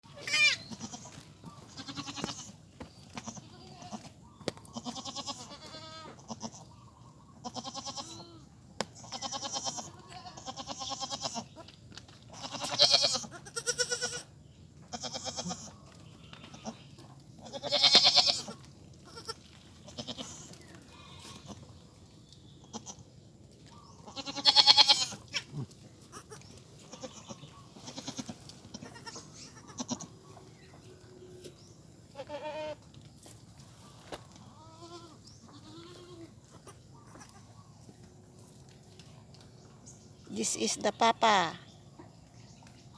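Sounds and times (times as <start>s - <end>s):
goats bleating: 0.1s - 2.6s, 3.2s - 4.1s, 4.7s - 6.7s, 7.4s - 8.4s, 9.0s - 11.6s, 12.3s - 14.3s, 14.9s - 15.8s, 16.4s - 21.6s, 22.6s - 23.0s, 24.1s - 30.2s, 32.1s - 32.8s, 34.4s - 37.5s.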